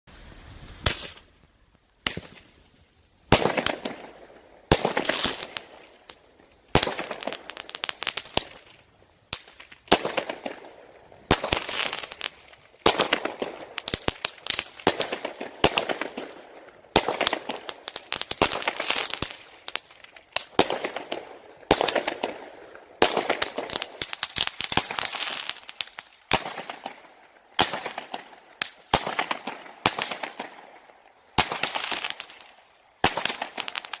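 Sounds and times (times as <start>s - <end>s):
firework crackling bursts: 0.1s - 34.0s
firework launch bangs: 0.6s - 1.3s.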